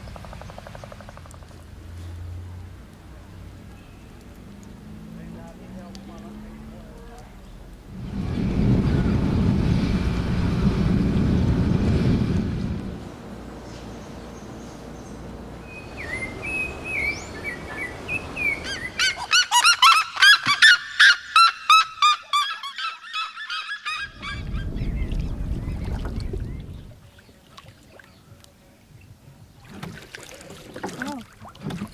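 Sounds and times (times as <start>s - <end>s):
low rumble: 7.8s - 13.6s, 24.1s - 27.1s
bird honking calls: 18.5s - 24.5s.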